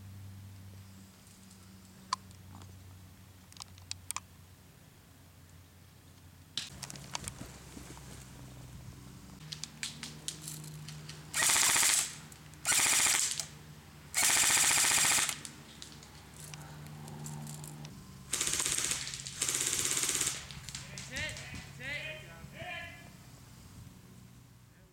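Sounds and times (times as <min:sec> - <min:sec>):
airsoft gun firing bursts: 0:11.3 - 0:13.5, 0:14.2 - 0:15.5, 0:18.3 - 0:21.6.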